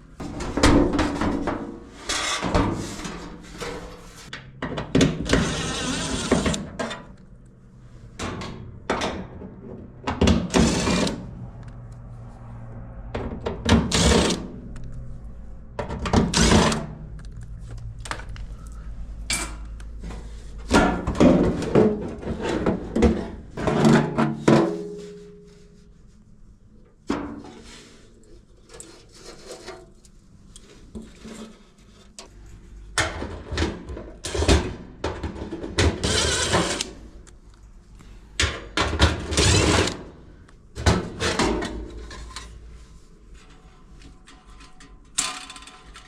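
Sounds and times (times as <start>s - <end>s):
loud banging and scraping: 0.2s - 7.2s, 8.1s - 11.6s, 12.3s - 14.8s, 15.7s - 17.2s, 19.2s - 25.5s, 33.0s - 37.1s, 38.4s - 46.0s
metal panels knocking and clanking: 0.2s - 7.2s, 8.1s - 11.3s, 20.2s - 25.1s, 33.0s - 36.8s, 38.4s - 40.2s, 40.8s - 42.5s.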